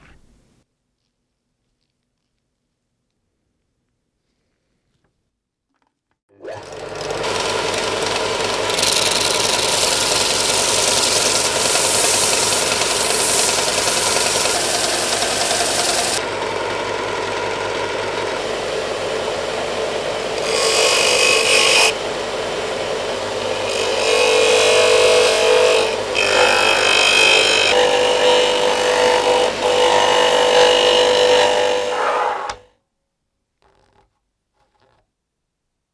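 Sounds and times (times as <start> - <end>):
power tool grinding metal: 6.4 - 32.6.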